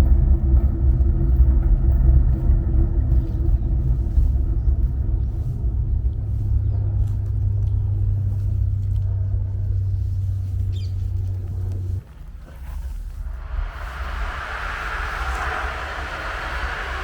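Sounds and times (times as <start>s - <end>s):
deep steady hum: 12.6s - 17.0s
spring drum thunder rumble: 13.2s - 17.0s.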